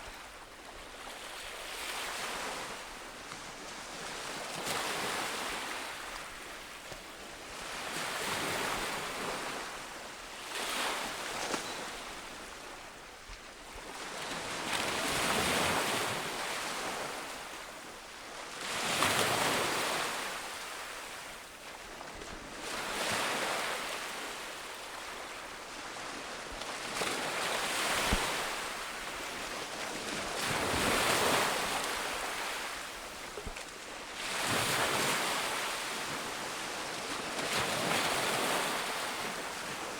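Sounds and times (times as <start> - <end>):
ocean waves breaking on a beach: 0.0 - 39.9
wind: 0.0 - 39.9.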